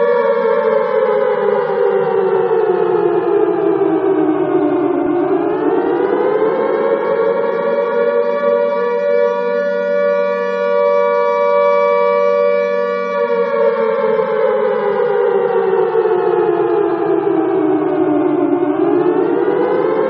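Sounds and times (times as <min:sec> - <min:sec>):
alarm siren wailing: 0:00.0 - 0:20.0.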